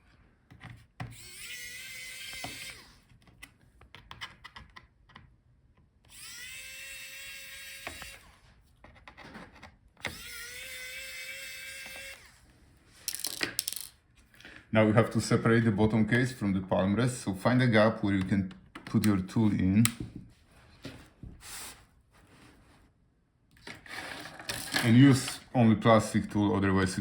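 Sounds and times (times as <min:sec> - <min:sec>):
electric screwdriver whirring: 0:01.1 - 0:03.1, 0:06.1 - 0:08.4, 0:10.0 - 0:12.4.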